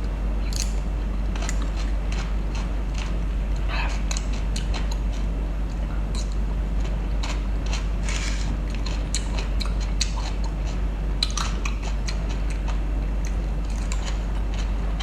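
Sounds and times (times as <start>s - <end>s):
steady low hum: 0.0s - 15.0s
food being bitten and chewed: 6.2s - 15.0s.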